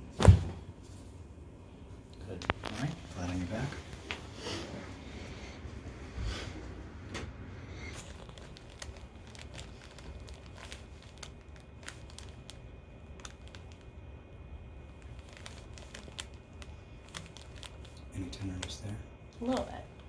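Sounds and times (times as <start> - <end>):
paper crinkling and rustling: 2.3 - 4.2, 7.8 - 13.9, 14.8 - 19.8.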